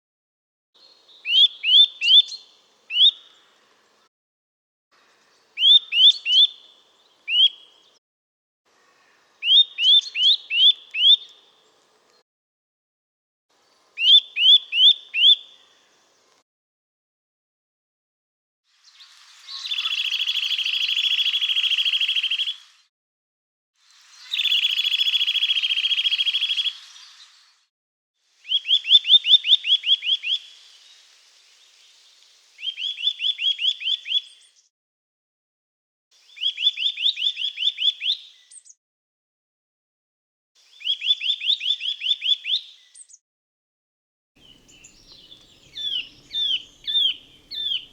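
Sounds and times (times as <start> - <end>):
bird fast trills: 44.4 - 47.9
bird rising whistled notes: 44.4 - 47.9.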